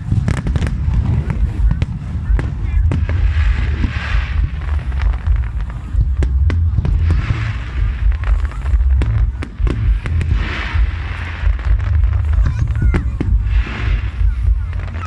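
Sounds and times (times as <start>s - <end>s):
fireworks bangs and crackles: 0.0s - 15.0s
low rumble: 0.0s - 15.0s.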